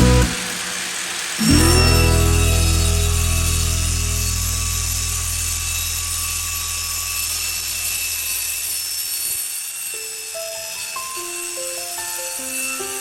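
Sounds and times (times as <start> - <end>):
low motor-like hum: 1.4 - 8.6.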